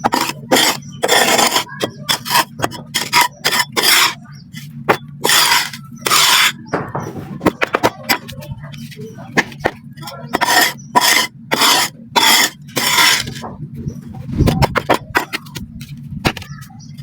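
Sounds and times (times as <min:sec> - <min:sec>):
sand crushed with gritty scraping: 0:00.0 - 0:06.7, 0:07.4 - 0:13.4.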